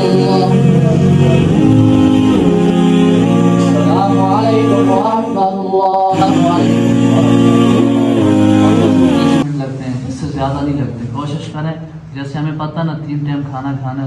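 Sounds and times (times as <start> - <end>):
man singing slow melody: 0.0 - 9.5.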